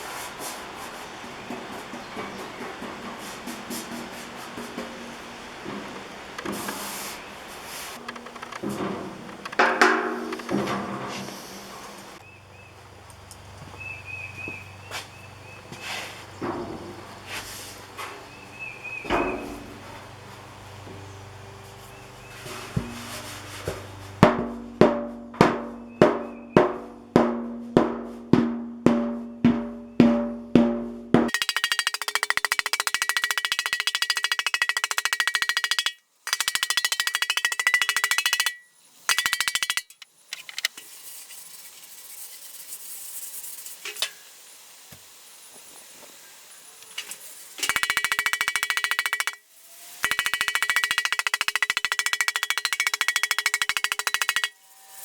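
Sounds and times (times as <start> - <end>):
hammer blows on copper: 31.3 - 40.0, 47.7 - 49.4, 50.0 - 54.6.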